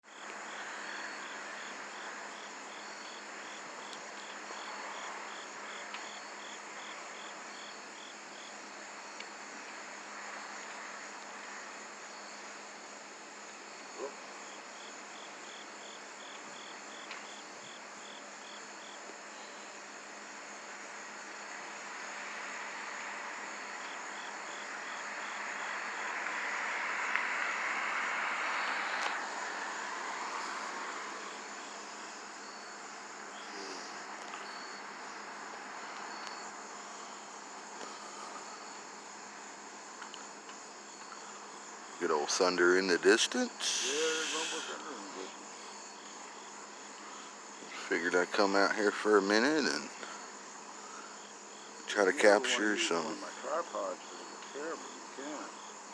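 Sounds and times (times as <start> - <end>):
insect pulsed chirp: 0.1 - 9.6, 10.2 - 22.3, 22.9 - 55.9
insects trilling: 0.1 - 55.9
broad rushing noise: 43.0 - 45.0.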